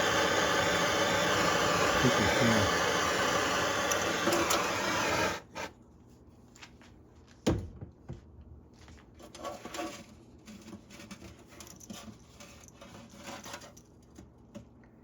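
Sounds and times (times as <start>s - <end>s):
loud steady hiss: 0.0s - 5.7s.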